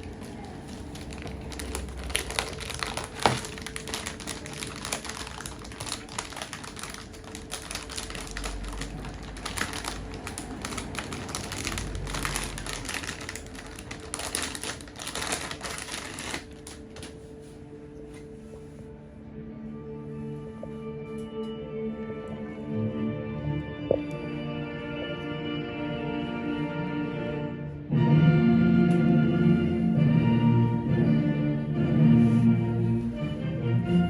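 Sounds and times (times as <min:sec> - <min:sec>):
packaging crinkling and clicking: 0:00.0 - 0:17.2.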